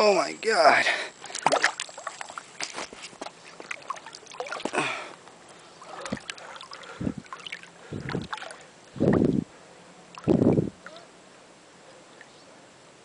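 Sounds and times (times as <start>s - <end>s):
dull water surges: 0.0s - 13.0s
water sloshing around a boat: 0.9s - 11.1s.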